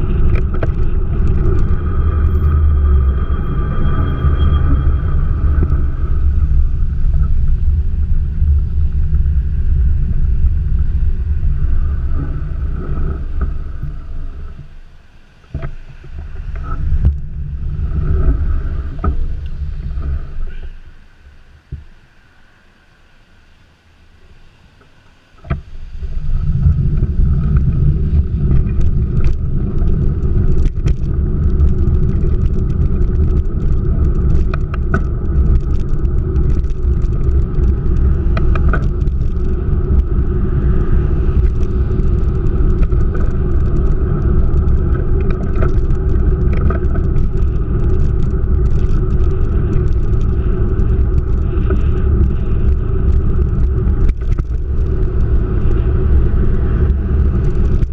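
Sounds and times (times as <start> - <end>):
vehicle engine rumbling: 0.0 - 57.9
small clicks and rattles: 0.1 - 2.5, 26.6 - 57.9.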